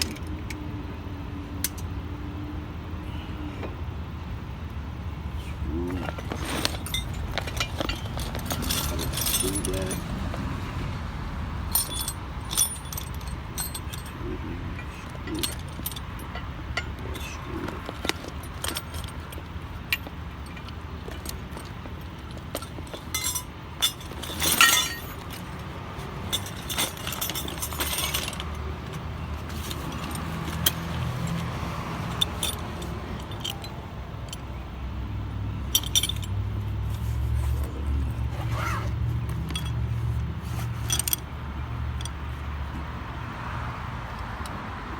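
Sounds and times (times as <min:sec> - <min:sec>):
metal clatter: 0:05.8 - 0:10.6, 0:11.6 - 0:34.5, 0:35.6 - 0:42.3
metal tools clinking and rattling: 0:05.8 - 0:10.6, 0:11.6 - 0:34.6, 0:35.5 - 0:42.8.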